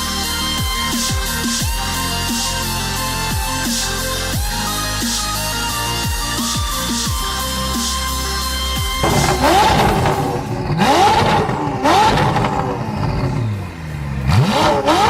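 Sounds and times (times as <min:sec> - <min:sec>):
electronic music: 0:00.0 - 0:15.0
sports car engine revving: 0:07.8 - 0:15.0.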